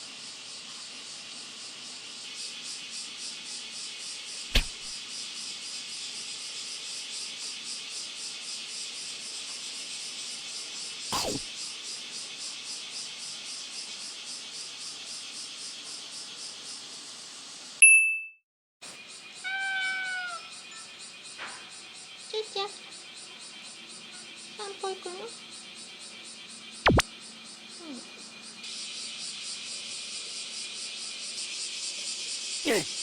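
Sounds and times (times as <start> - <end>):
cicadas buzzing: 0.0 - 17.6, 18.9 - 33.0.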